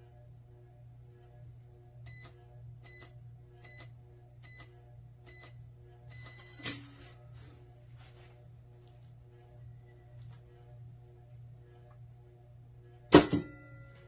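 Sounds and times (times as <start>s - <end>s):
keypad beeps: 5.3s - 6.8s.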